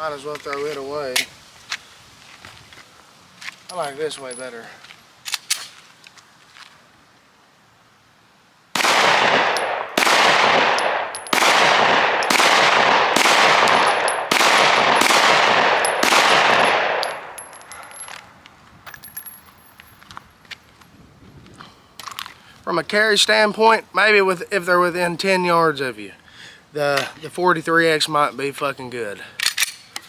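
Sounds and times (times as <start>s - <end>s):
pistol shots echoing: 8.8s - 18.0s.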